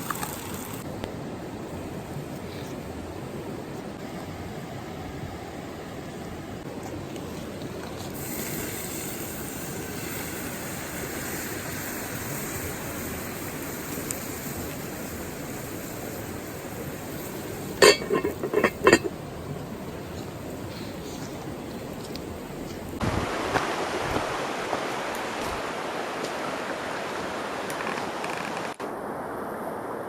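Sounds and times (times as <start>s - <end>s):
cookware clinking: 17.8s - 19.1s
river rushing: 23.0s - 30.0s.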